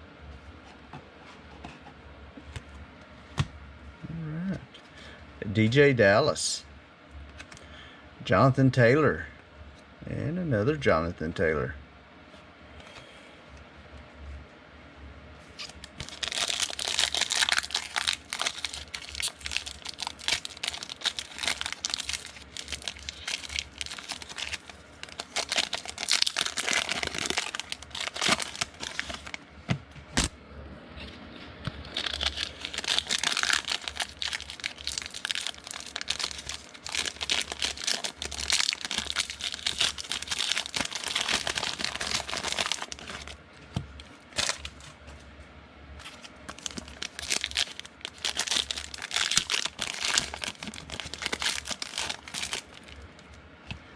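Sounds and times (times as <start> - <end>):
foil wrappers tearing and crinkling: 15.6 - 29.4, 31.8 - 43.4, 44.3 - 45.0, 46.0 - 53.0.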